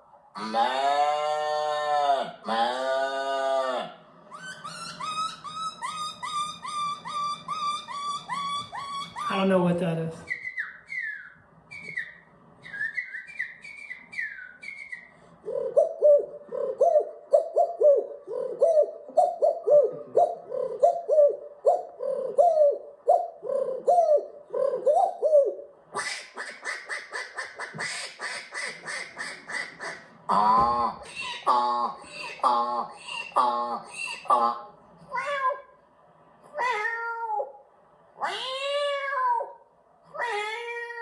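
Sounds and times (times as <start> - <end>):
man imitating animal calls: 0.3 - 4.0, 18.5 - 21.0.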